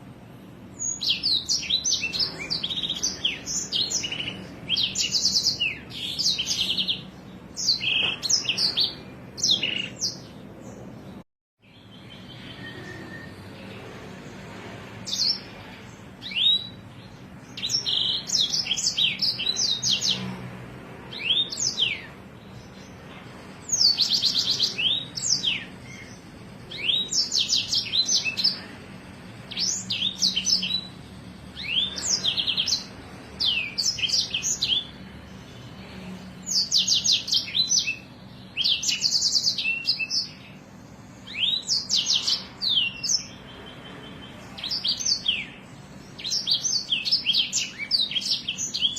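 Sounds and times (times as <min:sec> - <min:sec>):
songbird trills and whistles: 0:11.7 - 0:13.5, 0:41.2 - 0:45.6, 0:46.2 - 0:48.9.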